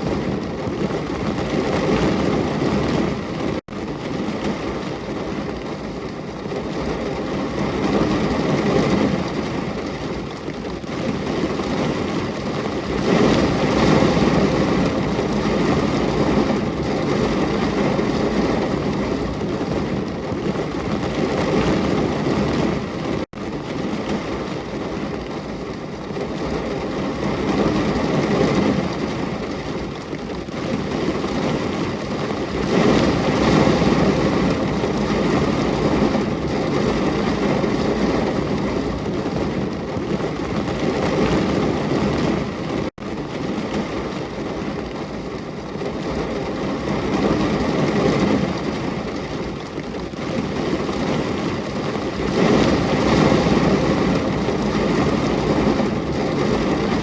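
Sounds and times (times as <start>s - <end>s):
heavy rain: 0.0s - 57.0s.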